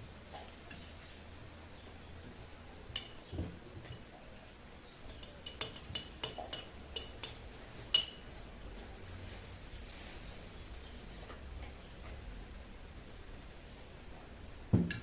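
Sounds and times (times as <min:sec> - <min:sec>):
metal utensil clinking on glass jar: 0:05.1 - 0:07.4.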